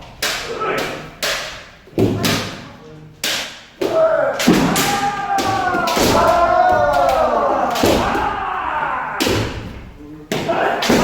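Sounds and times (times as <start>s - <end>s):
bamboo swords striking armour: 3.2s - 8.4s, 10.3s - 11.0s
people shouting: 3.8s - 11.0s.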